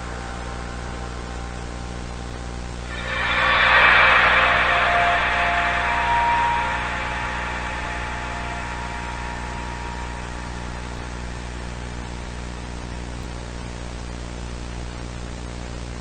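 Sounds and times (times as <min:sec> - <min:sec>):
low hum: 0:02.9 - 0:13.8.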